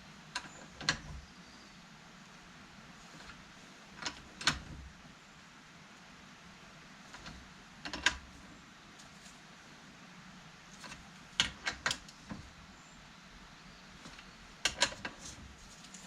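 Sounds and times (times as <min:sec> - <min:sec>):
hand tools clicking and knocking: 0:14.1 - 0:15.4.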